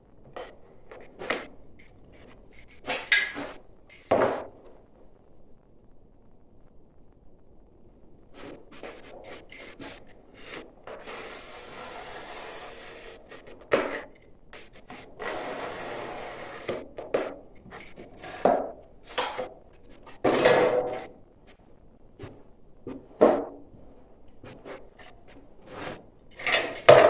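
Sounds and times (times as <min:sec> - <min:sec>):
scraping fiber board: 0:00.3 - 0:04.5, 0:08.4 - 0:21.6, 0:22.2 - 0:27.0.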